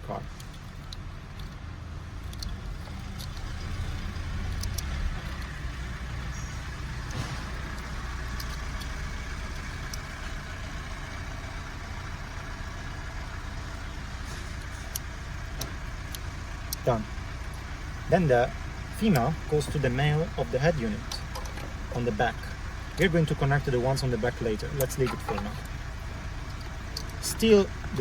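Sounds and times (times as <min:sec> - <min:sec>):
low vehicle rumble: 0:00.0 - 0:28.0
plastic connectors clicking: 0:02.2 - 0:03.8, 0:04.5 - 0:05.5.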